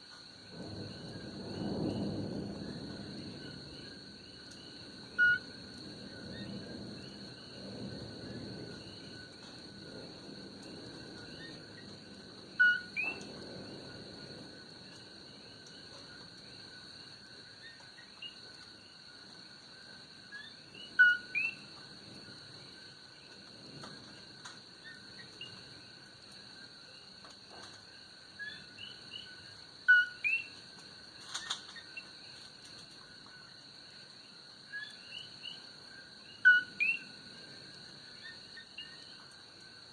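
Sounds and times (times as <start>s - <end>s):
high insect trill: 0.0s - 39.9s
low rumble of eruption: 0.3s - 29.9s
frogs calling: 0.8s - 9.4s, 10.0s - 19.0s, 19.6s - 27.1s, 27.9s - 30.6s, 31.3s - 32.4s, 34.6s - 39.9s.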